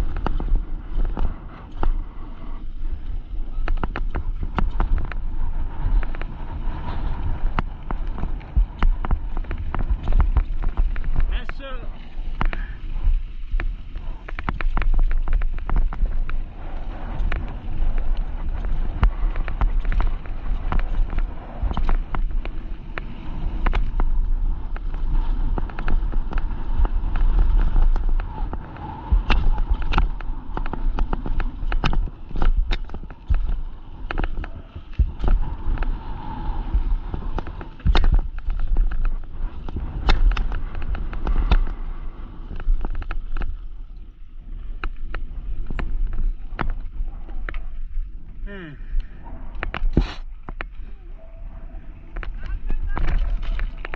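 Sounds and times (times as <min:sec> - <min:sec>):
bike knocks and rattles: 0:00.0 - 0:02.1, 0:02.9 - 0:11.6, 0:12.3 - 0:41.9
bike tyres on rough ground: 0:00.0 - 0:53.9
wind buffeting microphone: 0:00.0 - 0:53.9.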